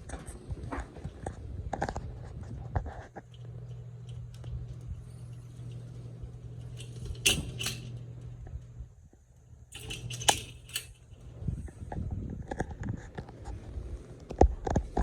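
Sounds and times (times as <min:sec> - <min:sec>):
ceiling fan motor hum: 0:00.0 - 0:15.0
metallic clinks and jingles: 0:06.7 - 0:07.9, 0:09.8 - 0:11.2.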